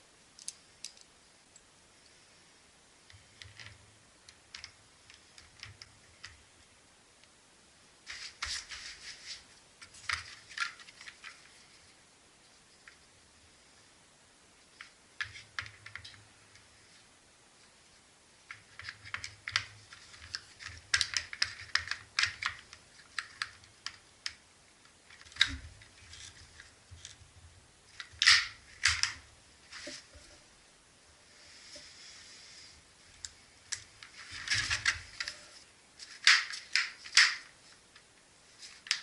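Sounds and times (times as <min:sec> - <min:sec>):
chainsaw parts clicking and rattling: 0:18.7 - 0:24.4, 0:28.0 - 0:29.2.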